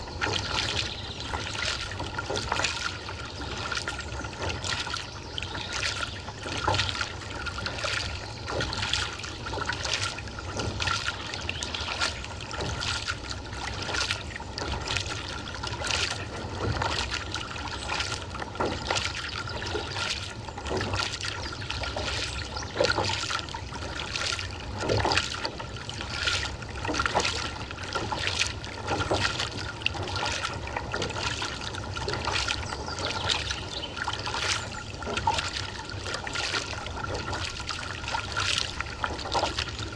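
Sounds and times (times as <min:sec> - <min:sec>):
kayak paddle splashing: 0:00.0 - 0:39.9
water dripping off paddle: 0:00.0 - 0:39.9.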